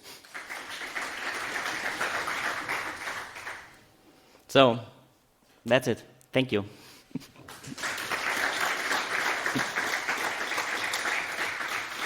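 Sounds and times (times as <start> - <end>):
audience applauding: 0.2 - 3.8, 7.4 - 12.0.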